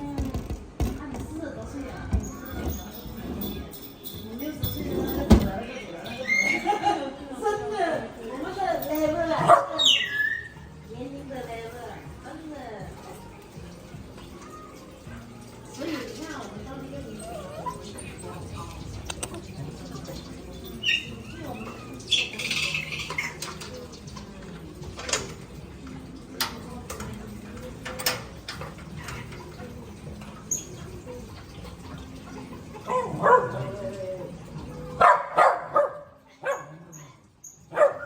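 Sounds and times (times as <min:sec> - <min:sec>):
dog barking: 0:09.4 - 0:10.0, 0:32.8 - 0:33.8, 0:35.0 - 0:36.9, 0:37.7 - 0:38.0
bird calls: 0:09.4 - 0:10.7, 0:20.1 - 0:24.2.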